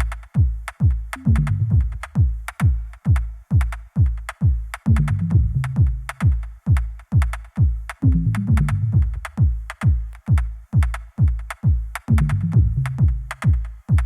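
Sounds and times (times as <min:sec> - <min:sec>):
electronic music with drum-machine beat: 0:00.0 - 0:14.0.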